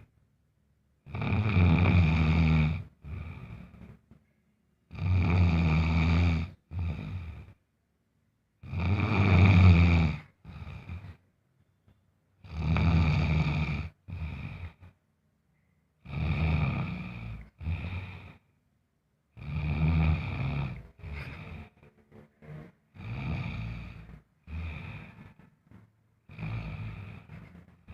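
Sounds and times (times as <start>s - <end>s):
heavy snoring: 1.1s - 3.8s, 4.9s - 7.6s, 8.6s - 11.2s, 12.4s - 14.9s, 16.0s - 18.5s, 19.4s - 21.8s, 22.4s - 25.5s, 26.3s - 27.9s.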